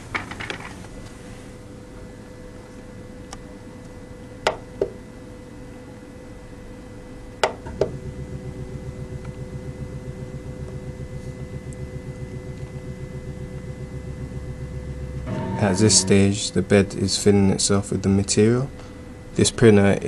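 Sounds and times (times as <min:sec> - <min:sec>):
printer motor pulsing over hum: 0:07.6 - 0:17.1.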